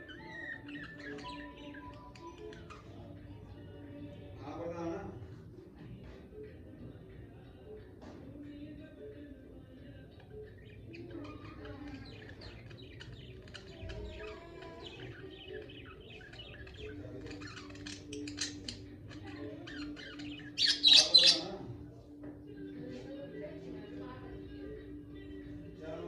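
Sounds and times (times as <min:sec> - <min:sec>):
budgerigars chirping and chattering: 0:00.0 - 0:03.6, 0:10.1 - 0:21.8.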